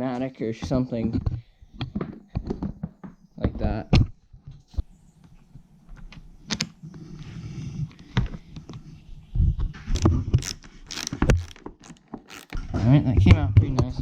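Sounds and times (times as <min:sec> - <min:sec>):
handling noise: 0:09.5 - 0:12.9.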